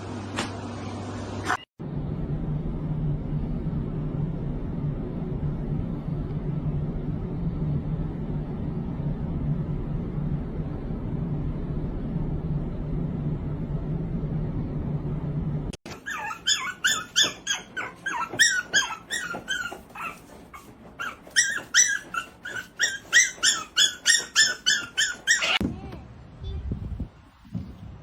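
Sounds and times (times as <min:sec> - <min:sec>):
steady low hum: 0:01.8 - 0:15.8
dog whining in high yelps: 0:15.9 - 0:25.6.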